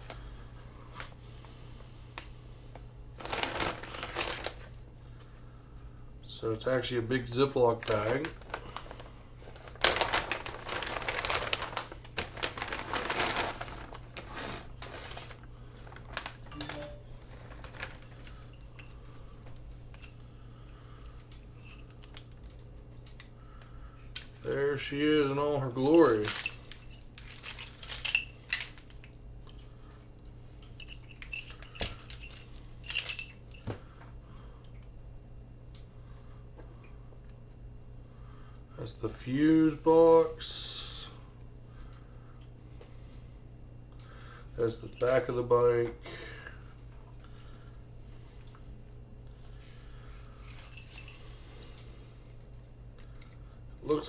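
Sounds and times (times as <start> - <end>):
faint steady hum: 0.0 - 54.0
plastic bag crinkling: 3.2 - 4.8, 7.6 - 19.1, 24.1 - 29.2, 30.6 - 33.8.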